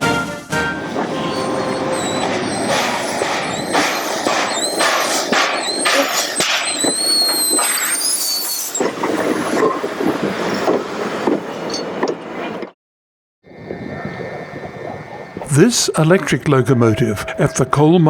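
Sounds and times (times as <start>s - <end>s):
train rumbling and clattering: 0.0s - 8.0s, 8.8s - 12.8s
steel wheels squealing: 0.8s - 9.4s.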